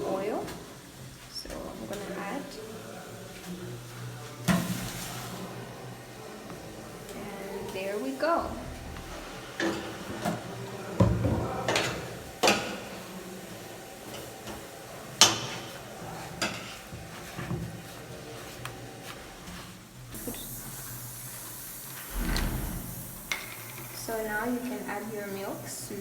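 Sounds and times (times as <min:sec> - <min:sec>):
mixing bowl and utensils clinking: 0:00.0 - 0:05.6, 0:06.2 - 0:20.2.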